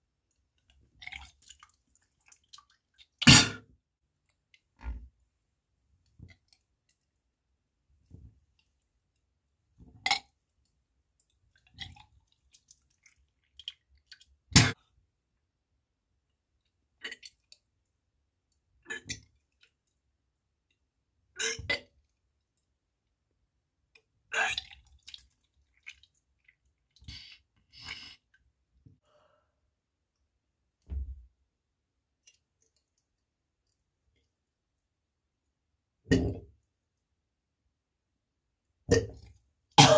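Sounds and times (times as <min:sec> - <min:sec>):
wet clicks and drips: 0:00.3 - 0:03.2, 0:06.0 - 0:07.2, 0:10.1 - 0:14.4, 0:23.9 - 0:27.2, 0:32.2 - 0:34.3
person retching: 0:03.2 - 0:03.6, 0:14.6 - 0:14.8, 0:21.4 - 0:21.9, 0:36.1 - 0:36.4.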